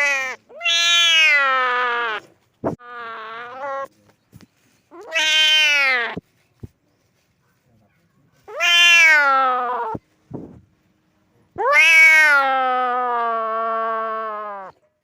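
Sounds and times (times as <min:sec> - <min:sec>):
cat meowing: 0:00.0 - 0:02.2, 0:02.8 - 0:03.9, 0:05.0 - 0:06.2, 0:08.5 - 0:10.0, 0:11.6 - 0:14.8.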